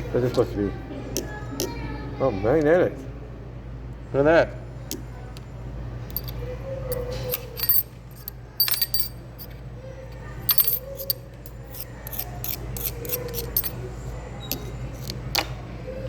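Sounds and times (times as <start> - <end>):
low room hum: 0.0 - 16.0
metal pieces clicking on mineral: 6.1 - 9.6, 10.5 - 13.8.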